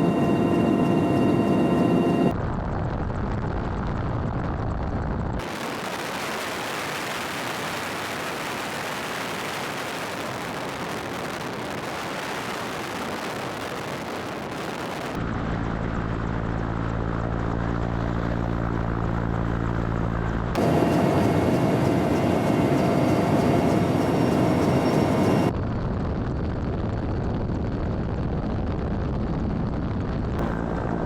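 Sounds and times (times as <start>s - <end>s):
helicopter engine and rotors: 0.0s - 2.4s, 11.8s - 25.5s, 30.4s - 31.0s
low rumble: 0.0s - 31.0s.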